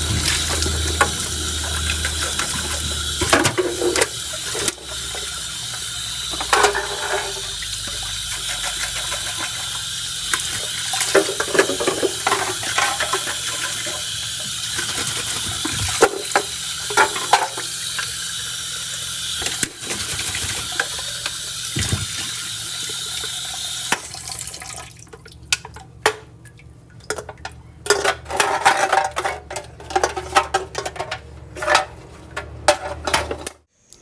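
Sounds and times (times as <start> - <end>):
metal cans clicking and clattering: 0.0 - 5.4, 6.3 - 14.1, 14.7 - 18.1, 27.0 - 33.6.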